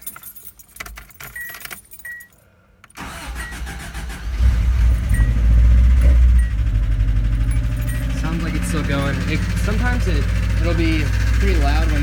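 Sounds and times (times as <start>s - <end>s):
keys jingling in ignition: 0.0s - 12.0s
car engine starting and running: 2.8s - 12.0s
engine ticking: 3.0s - 12.0s.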